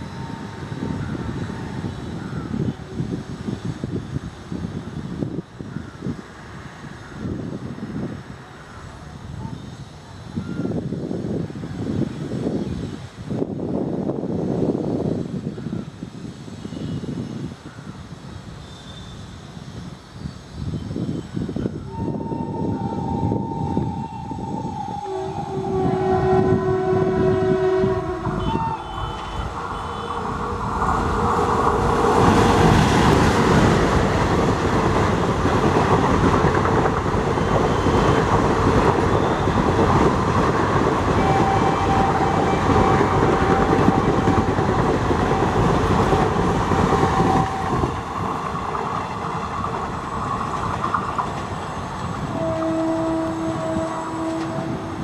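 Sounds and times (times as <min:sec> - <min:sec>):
train rushing and rattling on rails: 0:00.0 - 0:55.0
twin-tone locomotive horn: 0:21.8 - 0:36.3, 0:37.2 - 0:48.3, 0:52.1 - 0:55.0
long single-note horn: 0:21.9 - 0:32.4, 0:41.2 - 0:46.0, 0:52.3 - 0:55.0.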